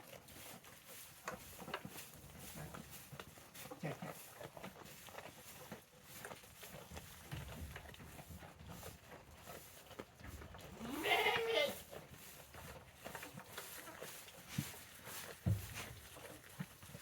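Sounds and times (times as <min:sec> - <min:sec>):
goat bleating: 0:10.7 - 0:11.8.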